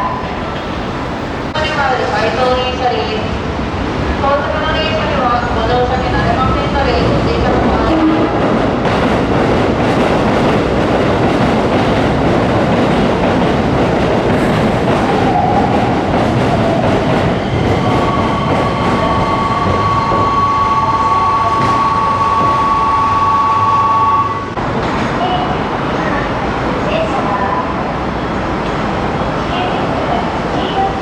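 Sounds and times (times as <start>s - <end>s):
train wheels clattering on rail: 7.0s - 20.6s, 24.5s - 26.2s.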